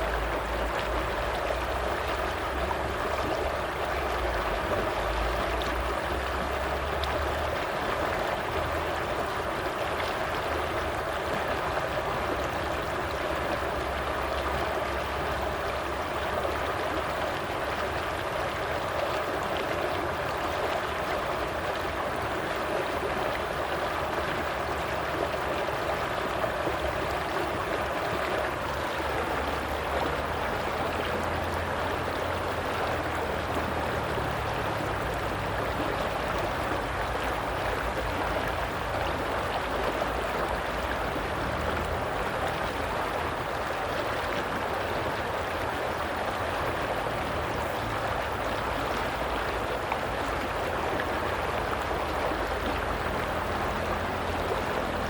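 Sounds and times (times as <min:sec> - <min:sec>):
stream water running: 0:00.0 - 0:55.0.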